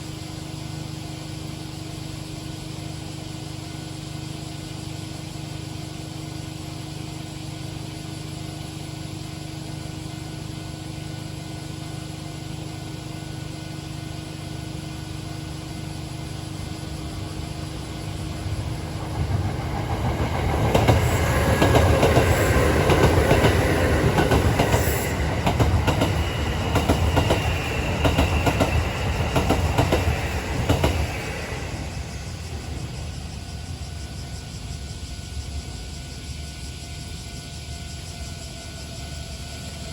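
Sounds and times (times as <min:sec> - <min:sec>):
train wheels clattering over rail joints: 0:17.9 - 0:32.8.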